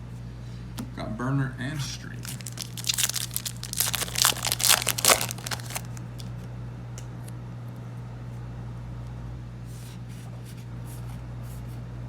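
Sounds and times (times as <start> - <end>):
low steady hum: 0.0 - 12.0
foil wrapper crinkling and tearing: 2.2 - 6.5.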